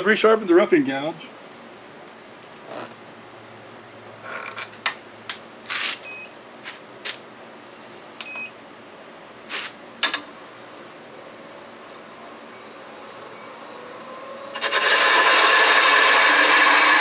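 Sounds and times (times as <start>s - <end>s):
short electronic beeps: 6.0s - 6.3s, 8.2s - 14.6s
faint high whine: 7.7s - 17.0s.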